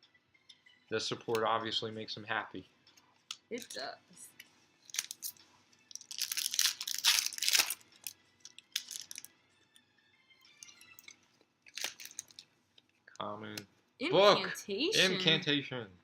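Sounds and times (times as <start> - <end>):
cards clicking and rustling: 4.9 - 9.3, 11.7 - 12.4
foil wrapper tearing and crinkling: 4.9 - 9.3, 11.7 - 12.4.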